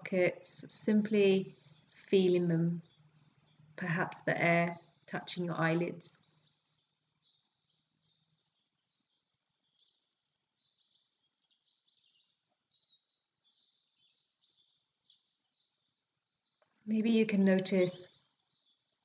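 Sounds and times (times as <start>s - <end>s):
birds chirping and whistling: 0.2s - 4.2s, 5.8s - 19.0s.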